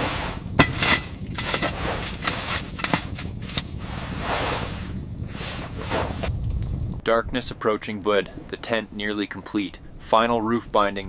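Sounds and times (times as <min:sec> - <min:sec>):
blizzard wind rumbling and hissing: 0:00.0 - 0:11.0.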